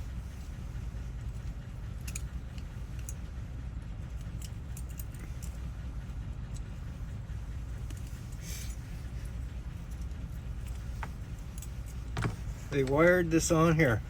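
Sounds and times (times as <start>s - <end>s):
steady low hum: 0.0s - 14.0s
keys and lock parts clinking: 2.0s - 3.2s, 4.1s - 5.7s, 7.9s - 12.8s.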